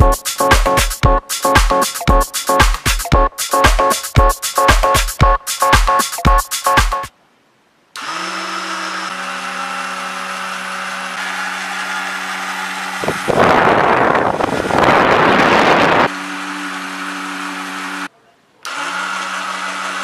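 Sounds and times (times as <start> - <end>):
small electric motor humming: 8.0 - 18.1, 18.7 - 20.0
loud harsh noise: 11.2 - 17.9.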